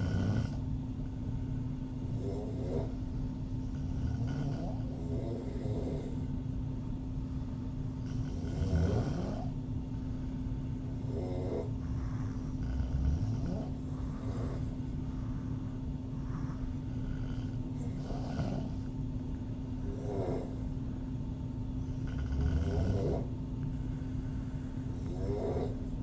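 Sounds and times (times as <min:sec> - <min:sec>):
woman snoring: 0:00.0 - 0:00.6, 0:02.1 - 0:03.0, 0:03.7 - 0:06.3, 0:08.0 - 0:09.6, 0:11.0 - 0:14.7, 0:16.2 - 0:18.9, 0:19.8 - 0:20.6, 0:21.9 - 0:23.3, 0:24.9 - 0:26.0
low hum and rumble: 0:00.0 - 0:26.0.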